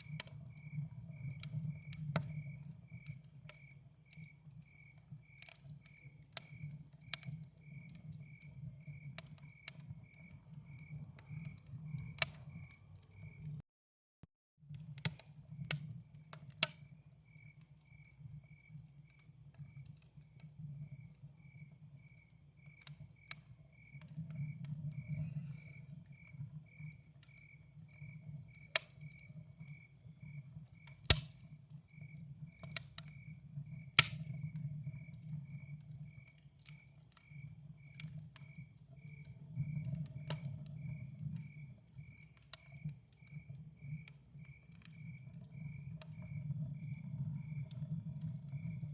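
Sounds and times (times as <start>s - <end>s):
campfire crackling: 0.0s - 13.6s, 14.6s - 48.9s
cricket chirping: 0.0s - 13.6s, 15.6s - 48.9s.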